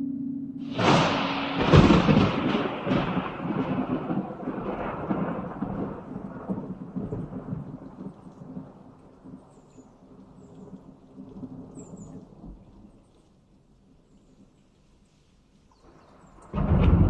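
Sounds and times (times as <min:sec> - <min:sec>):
thunder crack and rumble: 0:00.6 - 0:13.0, 0:15.8 - 0:17.0.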